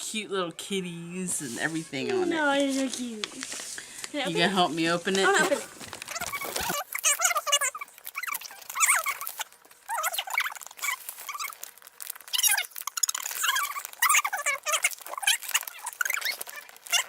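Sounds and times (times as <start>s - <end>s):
puppy whining: 5.3s - 17.0s.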